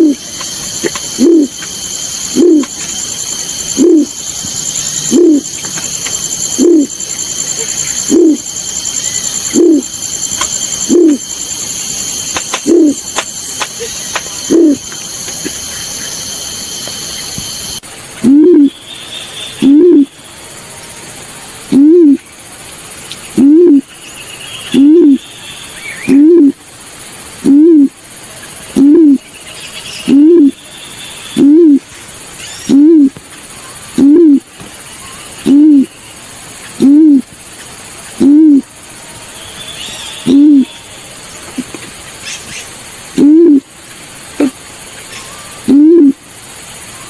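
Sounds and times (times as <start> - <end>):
bird hooting coo: 0.0 - 16.2, 18.2 - 18.8, 19.6 - 20.2, 21.7 - 22.3, 23.3 - 23.9, 24.7 - 25.3, 26.0 - 26.6, 27.4 - 28.0, 28.7 - 29.3, 30.0 - 30.7, 31.4 - 31.9, 32.6 - 36.0, 36.7 - 37.3, 38.1 - 38.7, 40.0 - 43.7, 44.3 - 46.3
high-pitched hiss: 0.0 - 47.0.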